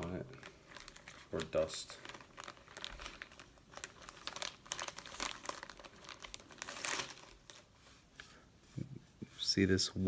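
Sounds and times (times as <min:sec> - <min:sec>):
plastic bag crinkling: 0:00.0 - 0:07.8.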